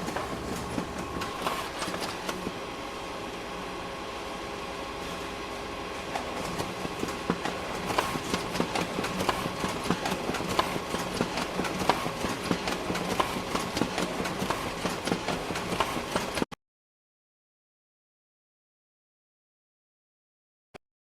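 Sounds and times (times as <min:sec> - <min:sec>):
photocopier running: 0:00.0 - 0:16.5.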